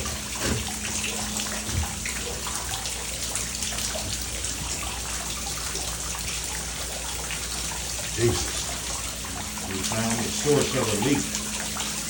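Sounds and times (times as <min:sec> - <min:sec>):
water spraying from burst pipe: 0:00.0 - 0:12.0.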